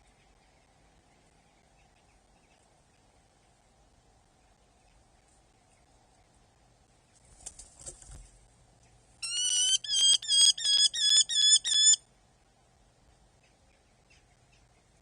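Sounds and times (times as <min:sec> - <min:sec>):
bird shrill kew calls: 0:09.2 - 0:12.0.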